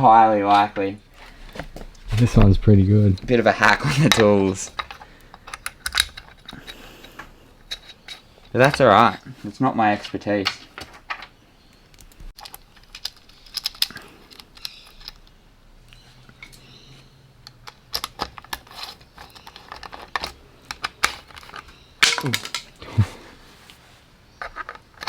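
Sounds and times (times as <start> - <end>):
tools and bike parts clicking: 3.2 - 8.9, 11.9 - 15.3, 17.4 - 22.8.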